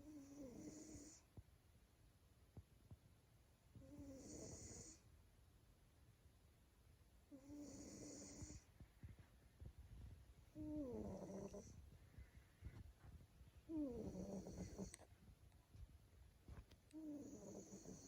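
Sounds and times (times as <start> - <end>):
cat snoring: 0.0 - 1.3, 3.8 - 5.0, 7.3 - 8.7, 10.5 - 11.8, 13.7 - 15.0, 17.0 - 18.0.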